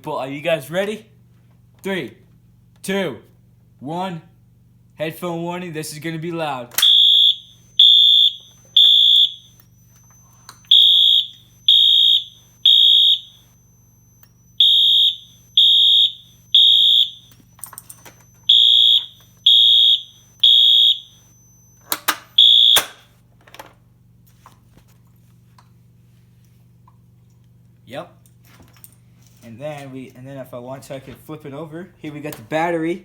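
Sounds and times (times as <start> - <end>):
fire alarm horn blasts: 6.8 - 23.1.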